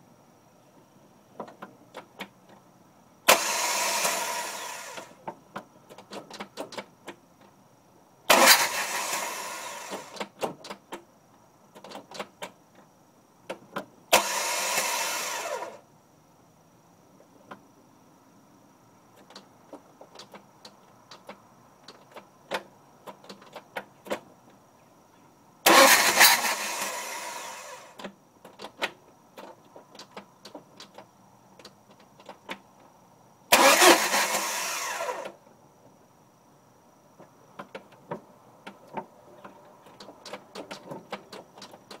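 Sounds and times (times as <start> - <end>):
engine cranking by starter: 3.2 - 5.2, 8.3 - 10.4, 14.1 - 15.8, 25.6 - 28.0, 33.5 - 35.4.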